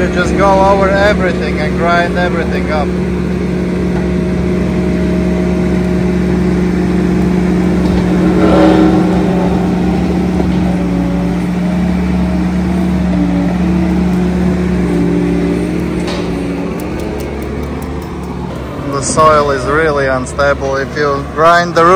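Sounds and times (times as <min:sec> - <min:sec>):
skid steer engine under load: 0:00.0 - 0:21.9
rotor head grinding stumps: 0:06.5 - 0:19.8.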